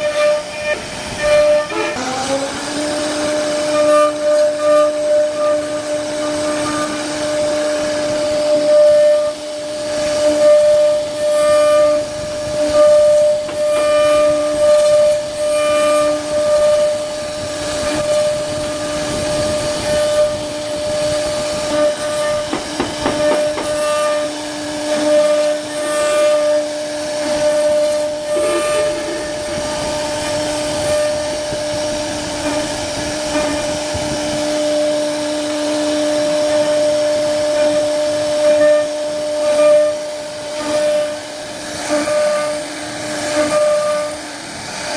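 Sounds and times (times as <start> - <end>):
bit carving wood: 0.0 - 31.3, 37.5 - 44.9
router spindle whining: 0.0 - 44.9.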